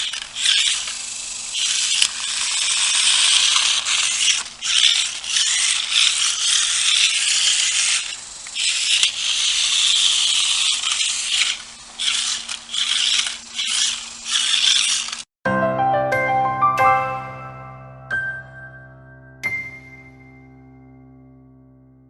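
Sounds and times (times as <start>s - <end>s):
toy car motor whirring: 0.0s - 15.3s.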